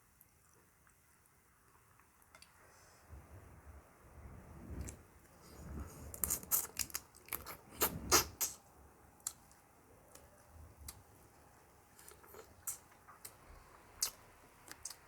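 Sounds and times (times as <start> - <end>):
person chewing and crunching: 12.0 - 15.0.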